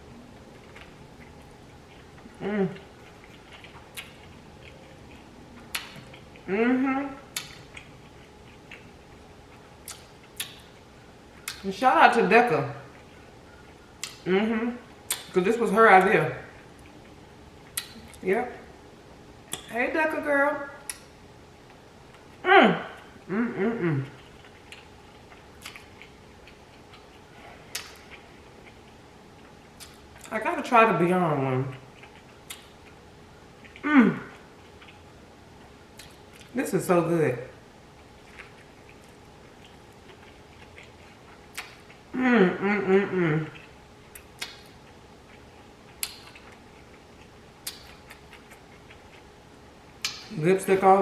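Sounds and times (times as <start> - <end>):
person chewing food: 0.2 - 11.7, 12.8 - 15.4, 16.5 - 18.2, 20.8 - 30.3, 31.6 - 36.6, 37.6 - 42.2, 42.8 - 50.3
wet mouth clicks: 5.6 - 6.5, 7.3 - 7.9, 9.8 - 10.7, 14.0 - 14.3, 15.1 - 15.4, 27.7 - 28.8, 38.3 - 42.0, 43.4 - 46.9, 47.6 - 49.2, 50.0 - 50.4.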